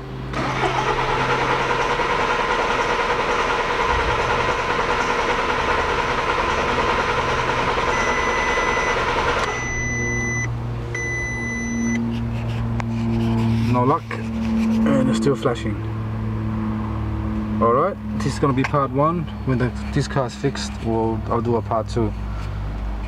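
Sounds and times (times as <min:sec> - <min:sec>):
car starter cranking: 0:00.3 - 0:10.3
high electronic beep: 0:07.9 - 0:12.0.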